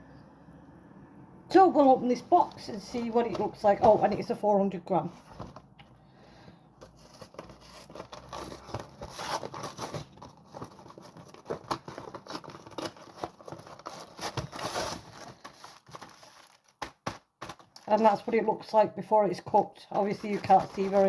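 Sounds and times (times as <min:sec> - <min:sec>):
cardboard packaging tearing: 0:07.0 - 0:17.9, 0:20.1 - 0:21.0.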